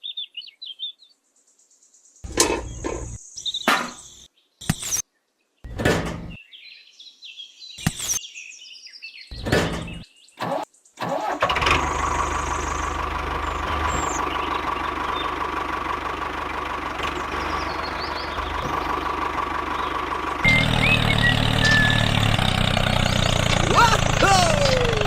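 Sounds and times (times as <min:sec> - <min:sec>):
small engine running: 0:10.4 - 0:25.0.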